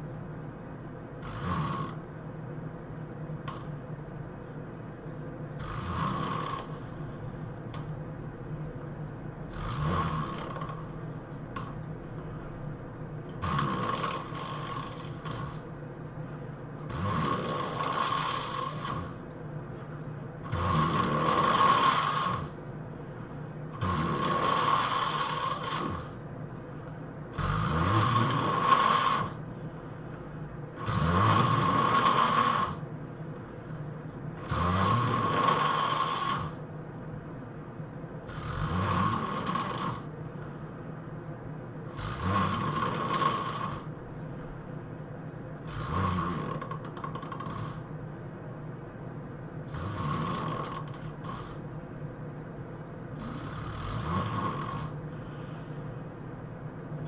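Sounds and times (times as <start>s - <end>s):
person snoring: 1.2s - 2.1s, 5.6s - 7.8s, 9.5s - 11.0s, 13.4s - 15.7s, 16.9s - 19.2s, 20.4s - 22.6s, 23.7s - 26.2s, 27.3s - 29.4s, 30.8s - 32.8s, 34.4s - 36.6s, 38.3s - 40.1s, 41.9s - 43.9s, 45.6s - 47.9s, 49.6s - 51.6s, 53.2s - 56.0s.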